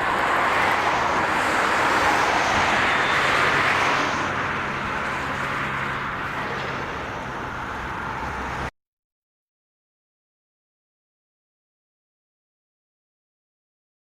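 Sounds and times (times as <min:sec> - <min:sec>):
heavy vehicle passing by: 0:00.0 - 0:08.7
low engine hum: 0:00.0 - 0:08.7.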